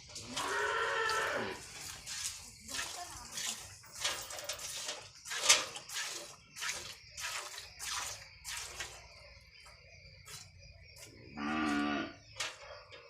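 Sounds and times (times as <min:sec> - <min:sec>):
milk squirting into a pail: 0:00.1 - 0:09.1.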